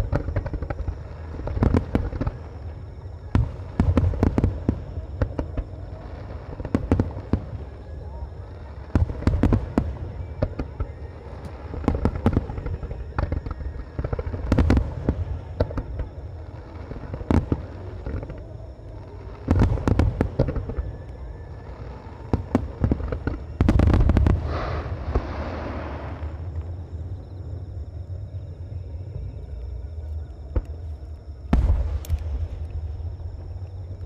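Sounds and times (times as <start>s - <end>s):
fireworks shells bursting with booms: 0.0s - 7.8s, 8.7s - 18.4s, 19.3s - 21.0s, 21.8s - 26.6s, 31.4s - 34.0s.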